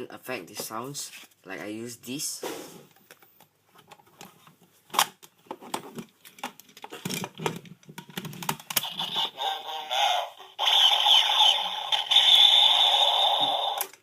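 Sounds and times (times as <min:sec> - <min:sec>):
toy electronic sound effect: 0:08.8 - 0:13.9.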